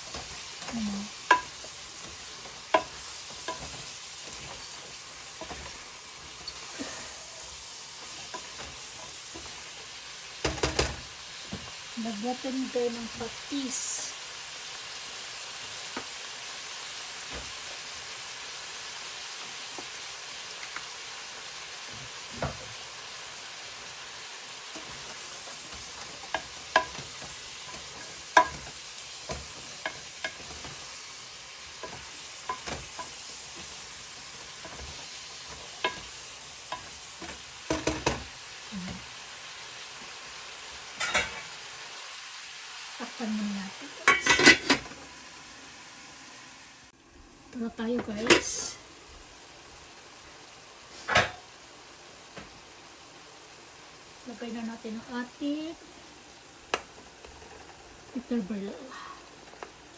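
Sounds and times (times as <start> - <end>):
food sizzling in a pan: 0.0 - 59.9
spatula scraping a pan: 1.3 - 9.7, 24.8 - 38.2.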